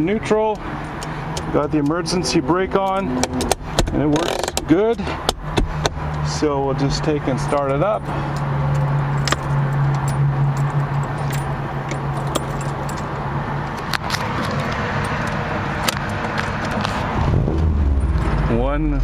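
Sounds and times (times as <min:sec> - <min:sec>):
car engine idling: 0:00.0 - 0:19.0.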